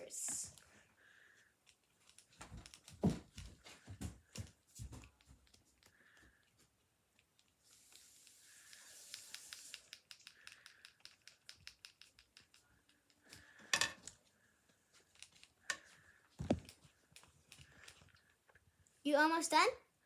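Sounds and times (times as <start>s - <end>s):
clicks and scratches handling materials: 1.6s - 3.0s, 15.0s - 18.6s.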